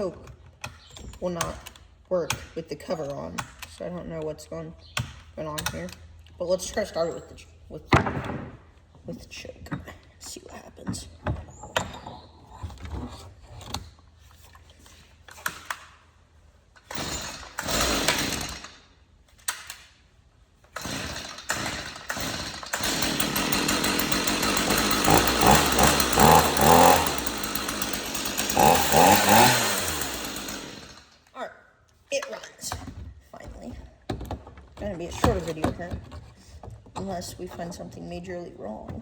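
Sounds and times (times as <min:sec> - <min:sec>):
chainsaw pull-start cranking: 0:12.8 - 0:16.0, 0:16.7 - 0:19.9, 0:20.6 - 0:31.4
chainsaw engine running and revving: 0:16.9 - 0:18.6, 0:20.8 - 0:31.1.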